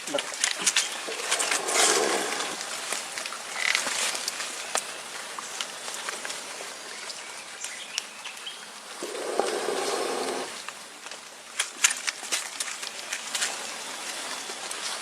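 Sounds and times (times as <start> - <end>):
insects buzzing: 0.5 - 7.1, 8.9 - 10.9.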